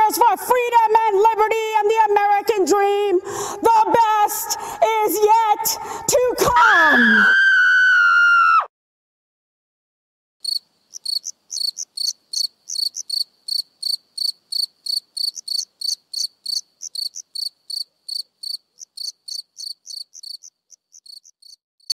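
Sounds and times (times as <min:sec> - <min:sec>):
cricket chirping: 0:10.4 - 0:21.9.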